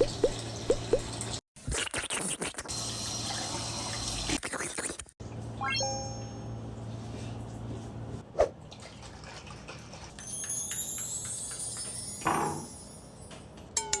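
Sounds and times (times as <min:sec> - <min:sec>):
water sounds: 0:00.0 - 0:01.4.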